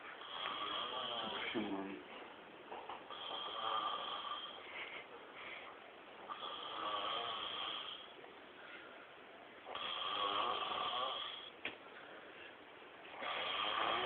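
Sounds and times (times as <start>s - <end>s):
man snoring: 0.2s - 1.7s, 3.1s - 4.6s, 6.2s - 8.1s, 9.7s - 11.5s, 13.1s - 14.0s.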